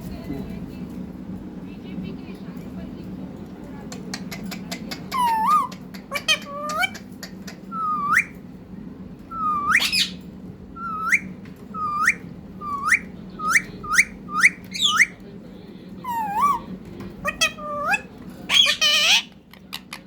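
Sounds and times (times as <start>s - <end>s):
parrot whistling: 5.2s - 7.0s, 7.7s - 8.4s, 9.3s - 10.2s, 10.8s - 15.1s, 16.1s - 19.3s.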